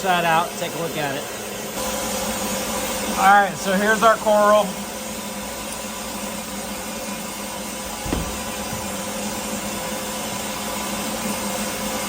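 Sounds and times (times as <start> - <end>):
shop machinery running: 0.0 - 12.0
dull thump: 8.0 - 9.2.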